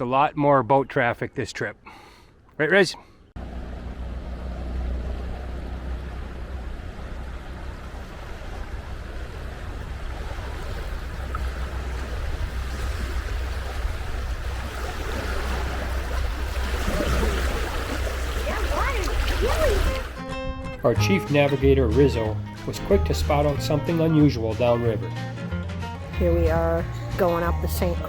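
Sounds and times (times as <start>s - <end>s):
moving water: 3.4s - 20.2s.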